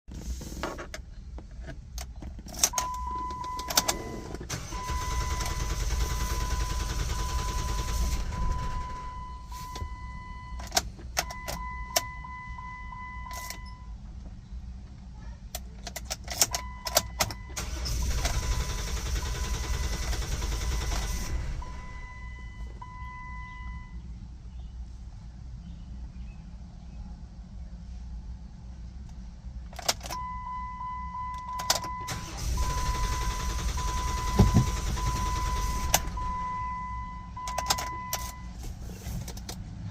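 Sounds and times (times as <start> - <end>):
ignition key clicks: 1.6 - 7.0, 9.7 - 12.2, 13.2 - 13.8, 15.6 - 18.5, 29.7 - 30.3, 31.3 - 36.6, 37.4 - 38.4
car engine cranking on starter: 2.6 - 9.3, 16.4 - 22.1, 31.5 - 36.7
dashboard warning chime: 2.7 - 14.0, 19.2 - 24.0, 30.1 - 38.6.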